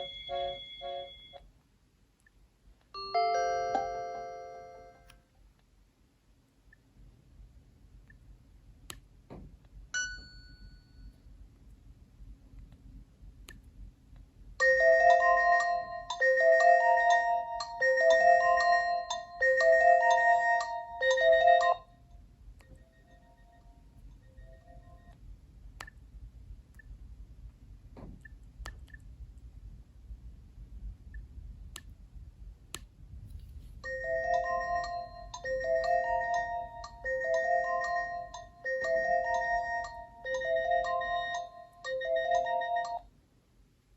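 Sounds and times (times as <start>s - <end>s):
bell-like ringtone melody: 0.0s - 1.4s, 3.0s - 5.0s, 14.6s - 22.0s, 33.8s - 43.0s
faint clicks and taps: 11.5s - 14.3s, 25.0s - 29.6s, 31.1s - 32.0s.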